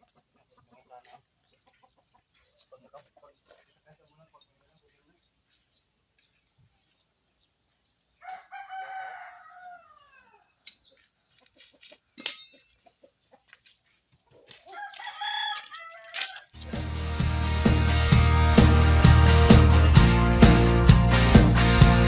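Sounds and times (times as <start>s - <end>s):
rooster crowing: 8.2s - 10.5s, 14.7s - 16.5s
loud music: 16.6s - 22.0s.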